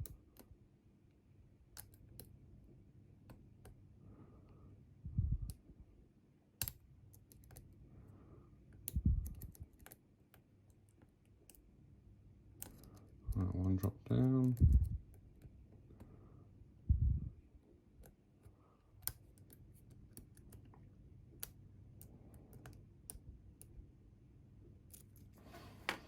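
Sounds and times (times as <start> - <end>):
lock-picking tools clicking: 6.6 - 7.8, 8.7 - 11.6.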